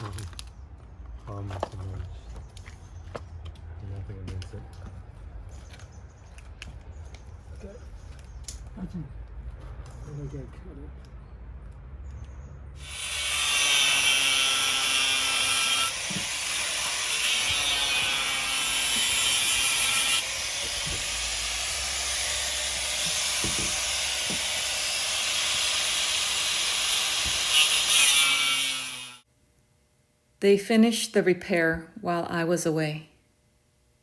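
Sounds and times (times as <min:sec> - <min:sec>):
power saw cutting pipe: 0:12.8 - 0:29.2.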